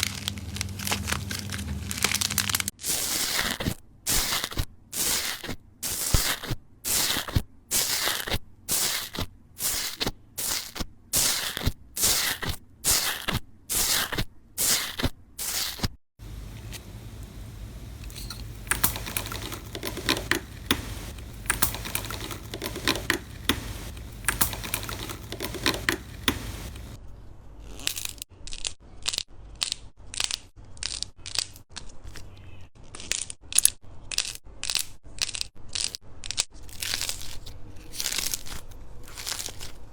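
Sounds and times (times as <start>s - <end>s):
dense slime crackling: 0.0s - 3.4s
slime squishing by hand: 0.0s - 27.0s.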